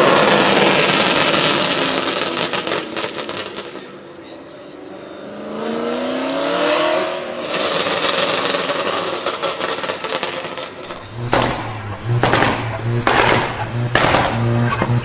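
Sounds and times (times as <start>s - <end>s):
exhaust pops and crackles: 8.6s - 15.0s
car engine revving: 10.8s - 15.0s
loud bangs: 10.8s - 15.0s
deep steady hum: 10.9s - 15.0s.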